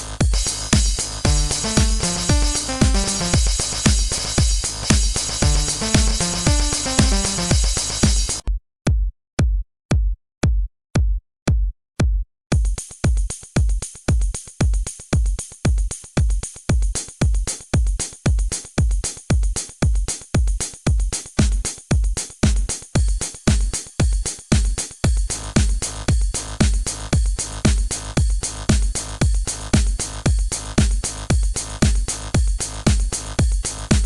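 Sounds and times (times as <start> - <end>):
electronic music: 0.0 - 8.4, 33.7 - 34.0
kick drum beating: 0.2 - 34.0.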